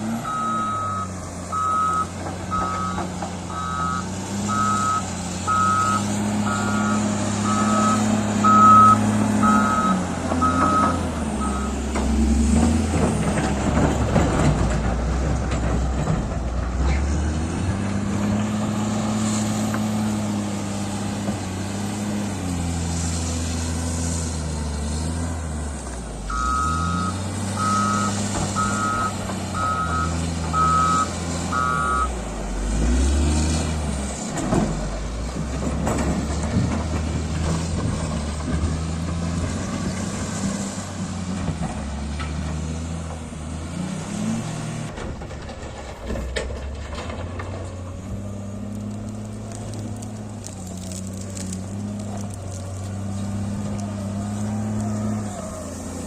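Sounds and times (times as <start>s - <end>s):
heavy diesel engine: 0.0s - 56.0s
reversing alarm beeping: 0.2s - 11.8s, 26.3s - 32.1s.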